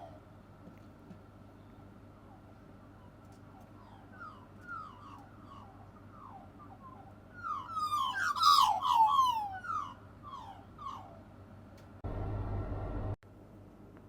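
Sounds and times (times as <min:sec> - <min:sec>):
birds calling: 0:01.4 - 0:11.4.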